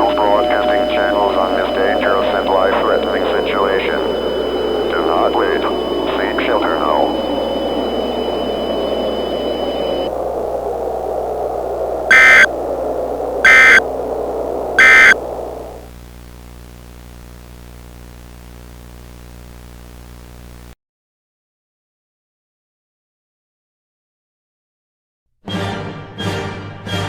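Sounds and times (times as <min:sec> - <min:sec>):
faint high whine: 0:00.0 - 0:20.8
radio static: 0:00.0 - 0:20.8
steady electrical hum: 0:00.0 - 0:20.8
digital data burst screeches: 0:12.1 - 0:12.5, 0:13.5 - 0:13.8, 0:14.8 - 0:15.2.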